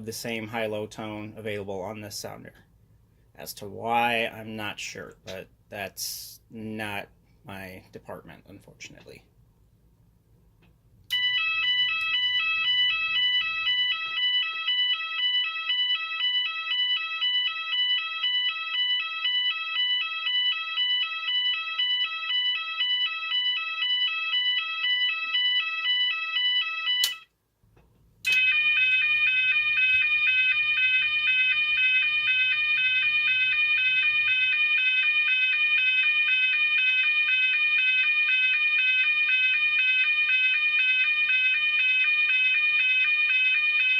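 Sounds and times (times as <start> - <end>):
fire alarm two-tone sounder: 11.1 - 27.3, 28.3 - 43.9
alarm switch click: 26.9 - 27.3, 28.2 - 35.5.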